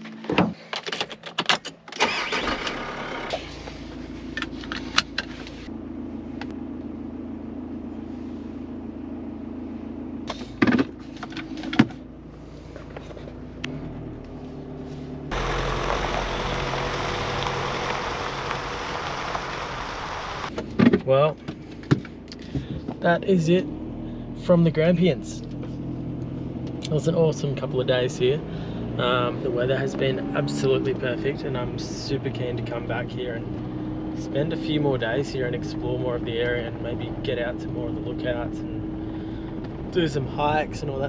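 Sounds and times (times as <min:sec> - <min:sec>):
loud steady noise: 0:15.3 - 0:20.5
vehicle engine idling: 0:15.3 - 0:20.5.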